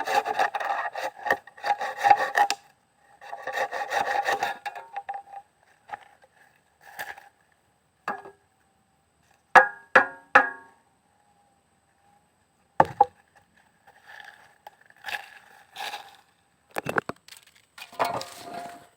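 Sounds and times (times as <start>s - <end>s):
wood knocks and scrapes: 12.8s - 14.4s.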